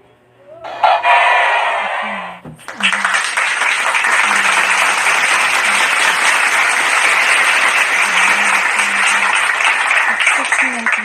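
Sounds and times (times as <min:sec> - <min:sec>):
crowd clapping: 0:02.6 - 0:11.0.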